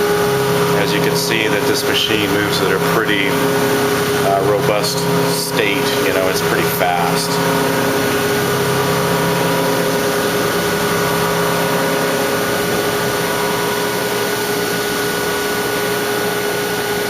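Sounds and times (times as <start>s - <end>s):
cnc machine whine: 0.0s - 17.0s
dense cutting noise: 0.0s - 17.0s
low hum: 0.0s - 17.0s.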